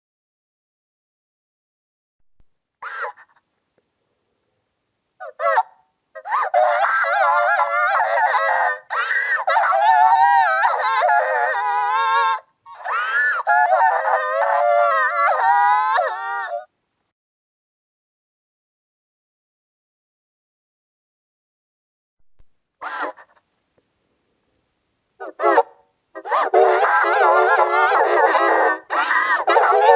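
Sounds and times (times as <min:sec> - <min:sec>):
distorted cartoon crying wails: 0:06.2 - 0:16.7, 0:22.8 - 0:23.4, 0:25.2 - 0:29.9.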